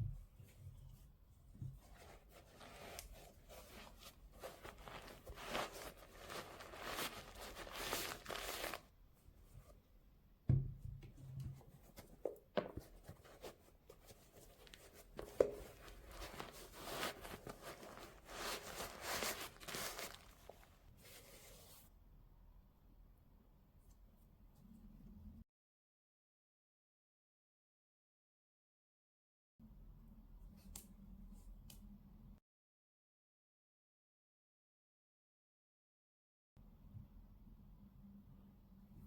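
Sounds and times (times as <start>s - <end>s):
paper rustling and crinkling: 1.6s - 8.9s, 11.8s - 21.8s.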